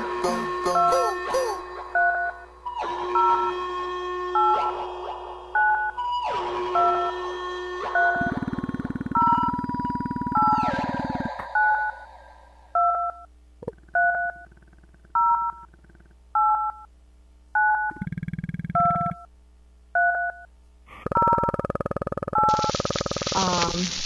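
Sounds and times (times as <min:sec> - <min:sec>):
loud hissing noise: 0:22.5 - 0:24.0.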